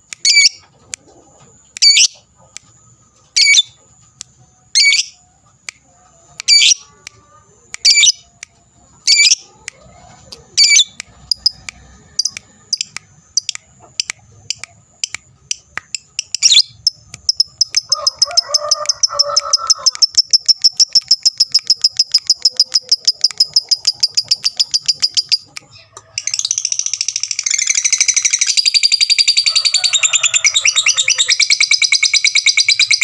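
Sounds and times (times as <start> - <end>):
lovebird squawks and chirps: 0.2 - 0.6, 1.8 - 2.3, 3.4 - 3.8, 4.7 - 5.2, 6.4 - 6.9, 7.8 - 8.2, 9.0 - 9.5, 10.1 - 33.0
lovebird rapid high chatter: 10.6 - 11.6, 26.2 - 33.0.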